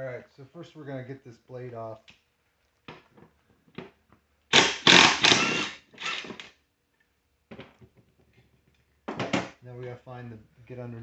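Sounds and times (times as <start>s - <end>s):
loud noisy burst: 4.5s - 6.4s.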